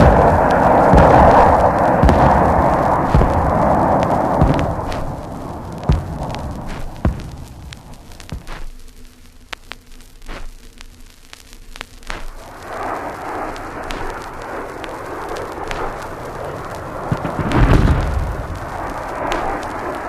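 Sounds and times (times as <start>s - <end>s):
deep explosion: 0.0s - 8.5s, 15.3s - 19.7s
jet aircraft roaring: 0.0s - 8.5s, 12.4s - 20.0s
vinyl record crackle: 0.0s - 20.0s.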